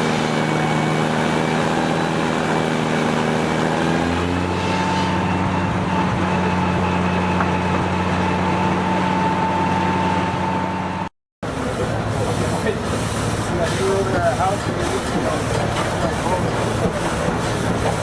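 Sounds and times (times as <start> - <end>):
steam engine and sawmill running: 0.0 - 18.0.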